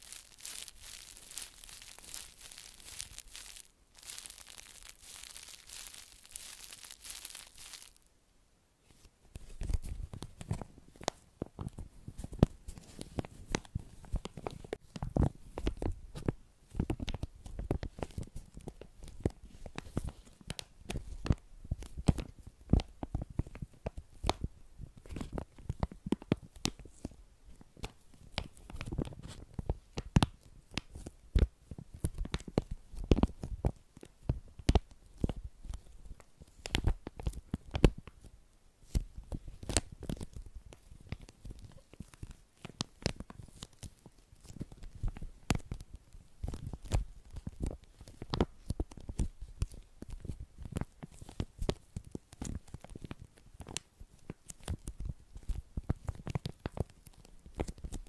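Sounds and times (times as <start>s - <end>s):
crinkling tearing rustle: 0.0s - 8.1s.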